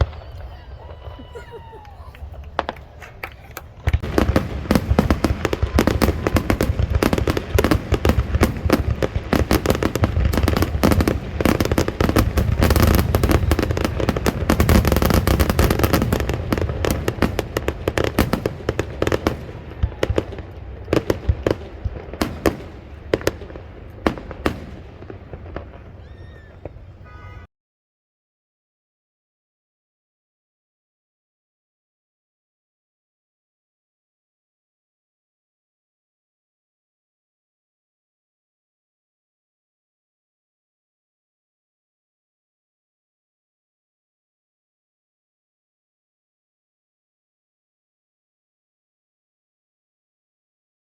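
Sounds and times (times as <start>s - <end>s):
fireworks bangs and crackling: 0.0s - 27.1s.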